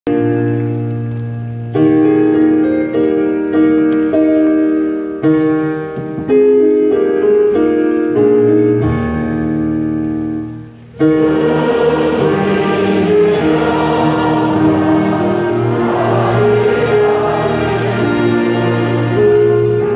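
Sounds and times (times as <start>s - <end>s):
hymn chords on keyboard: 5.4s - 19.9s
congregation singing: 10.9s - 19.9s.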